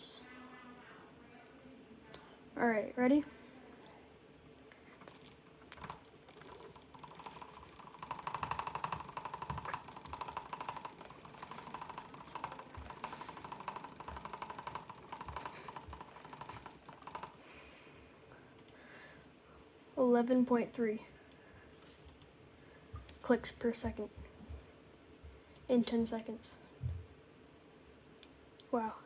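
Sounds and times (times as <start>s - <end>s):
mouse button clicking rapidly: 5.0s - 17.4s.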